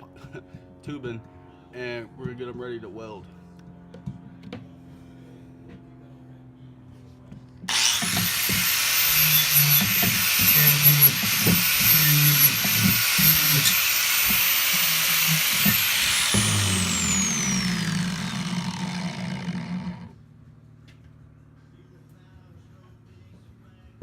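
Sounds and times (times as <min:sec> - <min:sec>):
grinder grinding steel: 0:07.7 - 0:20.1
high steady whine: 0:07.7 - 0:20.1.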